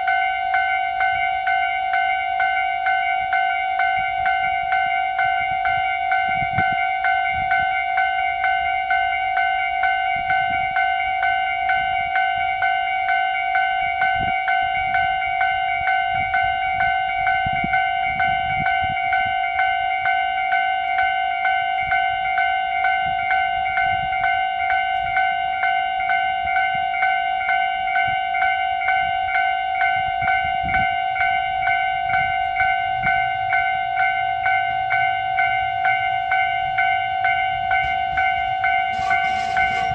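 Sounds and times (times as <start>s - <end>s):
level-crossing warning bell: 0.0s - 39.9s
low train rumble: 0.0s - 39.9s.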